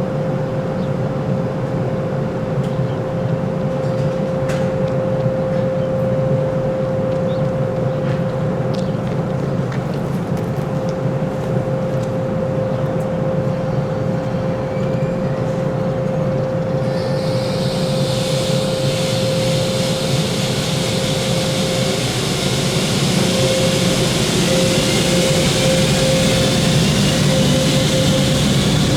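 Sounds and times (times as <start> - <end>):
electric train whining: 11.5 - 28.9
hiss: 16.8 - 28.9.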